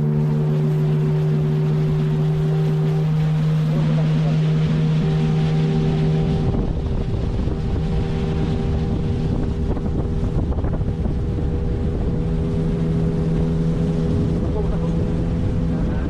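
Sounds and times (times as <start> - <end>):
outboard motor running: 0.0 - 16.0
water noise: 0.0 - 16.0
wind noise on microphone: 5.5 - 16.0.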